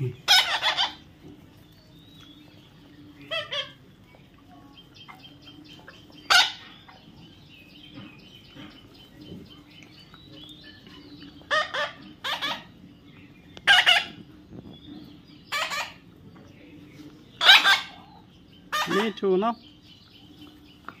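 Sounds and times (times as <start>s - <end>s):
parrot calling: 0.2s - 1.1s, 3.3s - 3.8s, 6.2s - 6.7s, 11.4s - 12.8s, 13.6s - 14.2s, 15.4s - 16.0s, 17.4s - 19.2s.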